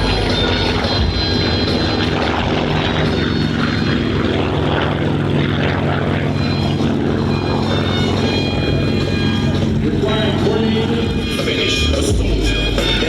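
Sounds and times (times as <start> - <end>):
aircraft engine noise: 0.0 - 13.0.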